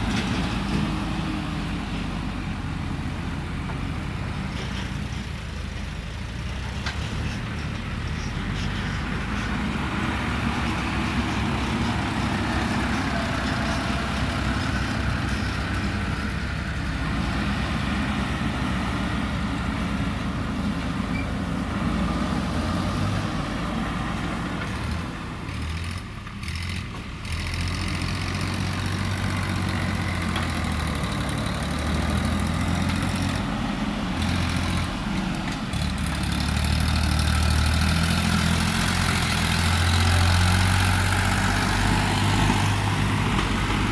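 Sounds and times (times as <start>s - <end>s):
backhoe diesel engine working: 0.0s - 43.9s.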